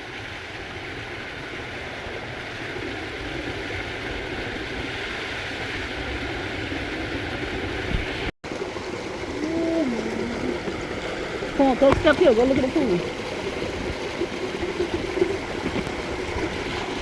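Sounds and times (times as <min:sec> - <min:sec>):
waterfall rushing: 0:05.6 - 0:17.0.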